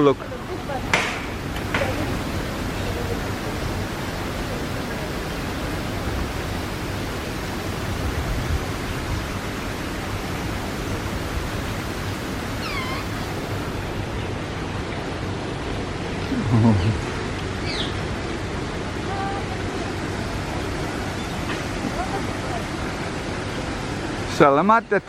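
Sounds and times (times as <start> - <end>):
short bird call: 12.6 - 13.3
steady rushing noise: 17.1 - 25.0.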